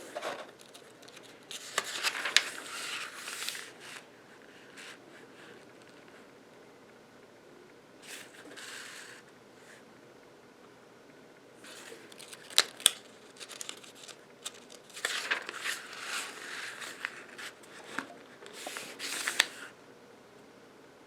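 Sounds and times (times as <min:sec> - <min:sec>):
paper rustling and pages turning: 0:00.0 - 0:06.2, 0:11.6 - 0:19.7
paper snapping: 0:12.1 - 0:15.8.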